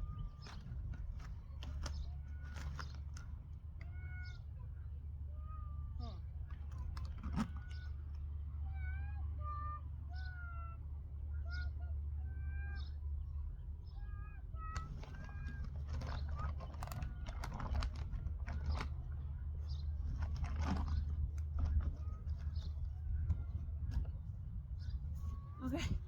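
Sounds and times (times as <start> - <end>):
steady low hum: 0.0 - 26.0
plastic bag rustling and clicking: 0.4 - 3.4, 14.8 - 19.0, 20.0 - 22.4.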